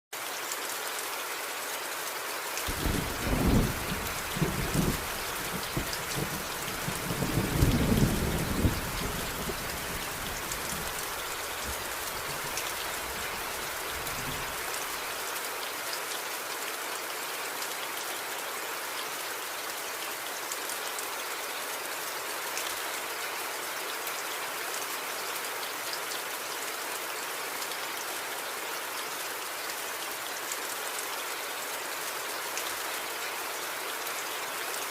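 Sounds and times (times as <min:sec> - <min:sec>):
thunder rumbling: 0:02.7 - 0:12.8
heavy rain hissing: 0:02.7 - 0:15.3.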